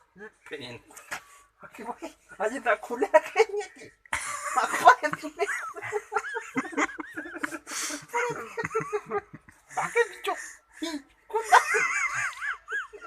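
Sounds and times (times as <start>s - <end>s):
people talking and laughing: 2.8s - 13.0s.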